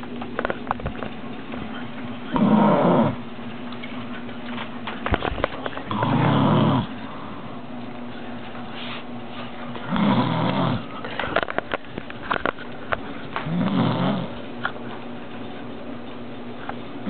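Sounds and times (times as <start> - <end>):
woman snoring: 9.9 - 10.9, 13.5 - 14.3.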